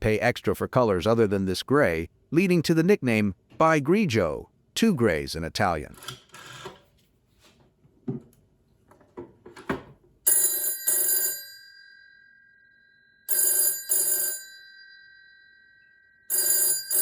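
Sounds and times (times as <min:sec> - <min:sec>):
telephone bell ringing: 0:10.3 - 0:17.0.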